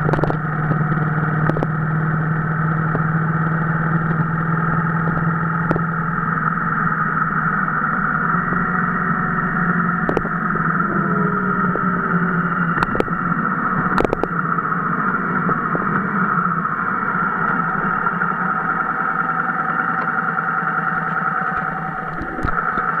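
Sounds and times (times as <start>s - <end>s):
motorcycle engine running: 0.0s - 23.0s
wind noise: 9.9s - 14.4s, 21.5s - 23.0s.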